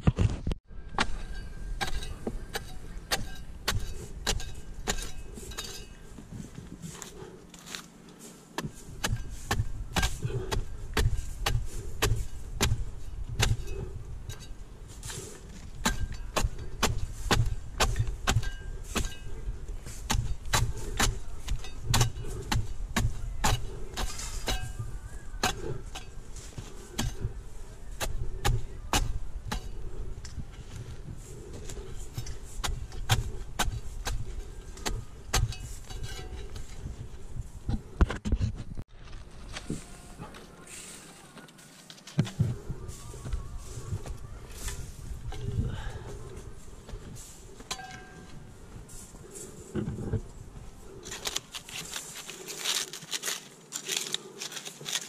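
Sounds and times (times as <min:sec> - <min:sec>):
blade chopping palm fronds: 0:15.0 - 0:27.4, 0:51.0 - 0:55.0.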